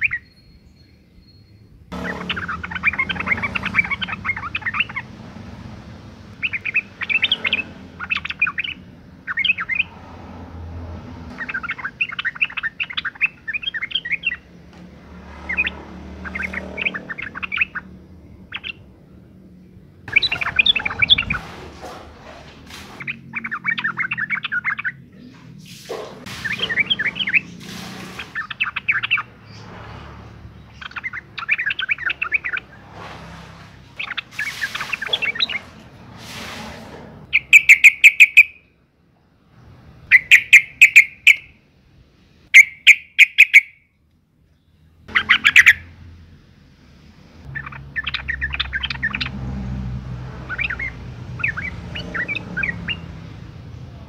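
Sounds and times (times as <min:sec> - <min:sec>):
bulbul chattering call: 0:01.9 - 0:05.1, 0:06.4 - 0:09.9, 0:37.3 - 0:38.6, 0:40.1 - 0:41.5, 0:42.6 - 0:43.8, 0:45.1 - 0:45.8.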